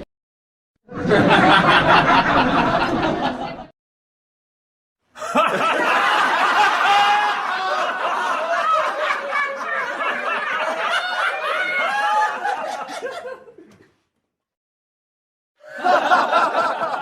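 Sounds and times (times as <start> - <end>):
group of people laughing: 0.9 - 3.7, 5.2 - 14.0, 15.6 - 17.0.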